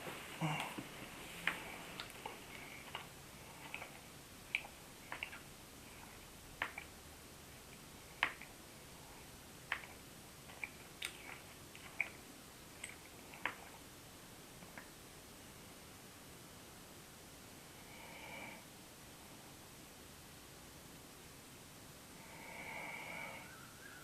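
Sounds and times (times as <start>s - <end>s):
teeth grinding clicks: 1.5s - 5.4s, 9.7s - 12.2s.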